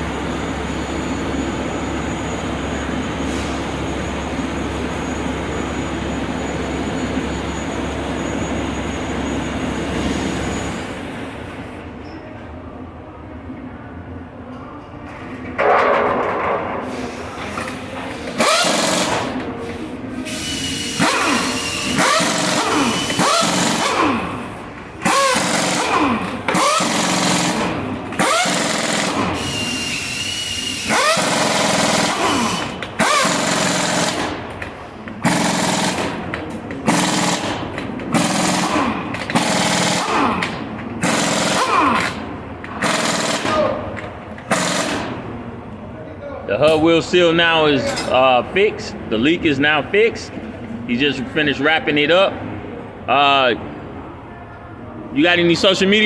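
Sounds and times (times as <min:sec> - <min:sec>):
pneumatic impact wrench hammering: 0:18.2 - 0:45.3.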